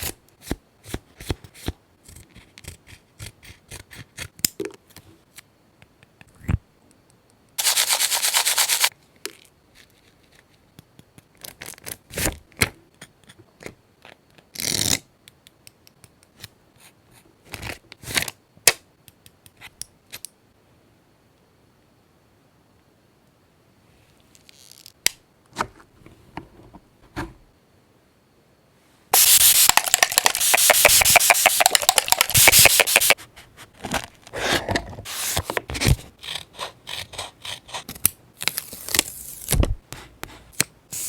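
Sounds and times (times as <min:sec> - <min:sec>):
paper rustling: 0:07.6 - 0:08.9, 0:29.2 - 0:33.2
taps and clicks: 0:29.2 - 0:33.2.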